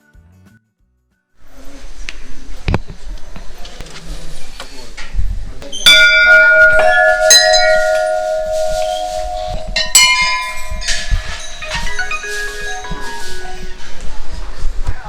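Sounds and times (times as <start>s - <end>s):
temple bells ringing: 5.6s - 14.8s.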